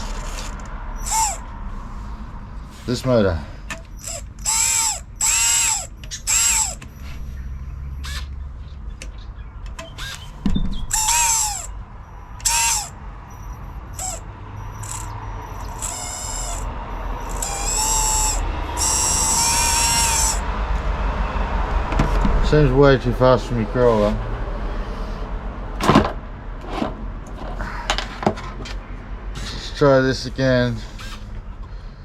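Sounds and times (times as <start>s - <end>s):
electric motor whining: 0.0s - 1.5s, 3.9s - 7.4s, 8.0s - 8.4s, 10.9s - 11.7s, 12.4s - 20.6s.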